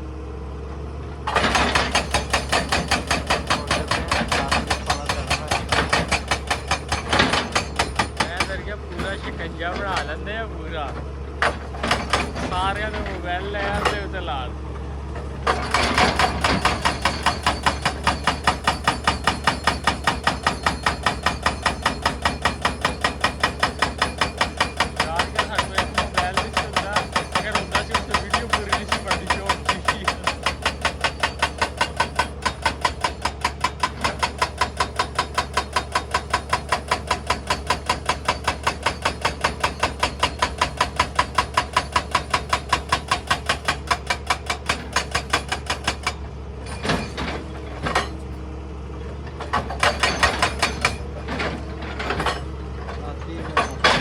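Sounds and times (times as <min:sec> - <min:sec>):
low drone of machine engine: 0:00.0 - 0:01.4, 0:08.6 - 0:16.7
hydraulic breaker hammering rock: 0:01.2 - 0:14.4, 0:15.4 - 0:48.3, 0:49.3 - 0:54.0.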